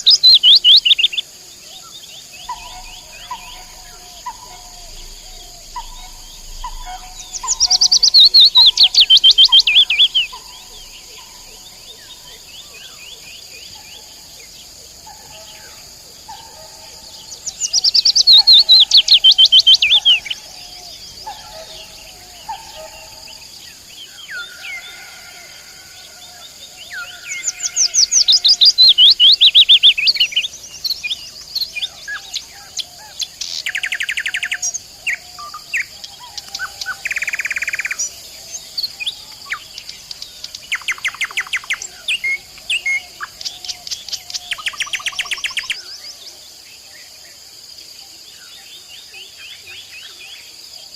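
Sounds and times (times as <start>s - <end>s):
nightingale singing: 0.0s - 46.4s.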